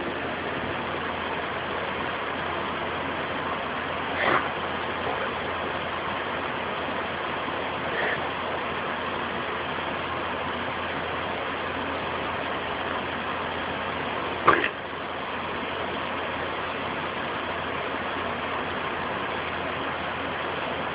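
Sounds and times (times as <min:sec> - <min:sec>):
steady background noise: 0:00.0 - 0:20.9
dog coughing: 0:04.1 - 0:05.4, 0:14.4 - 0:14.8.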